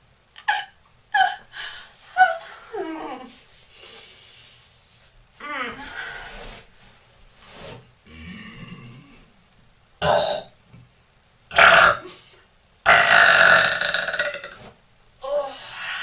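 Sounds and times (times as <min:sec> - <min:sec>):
woman burping: 0:10.0 - 0:10.5, 0:11.5 - 0:12.1, 0:12.9 - 0:14.6.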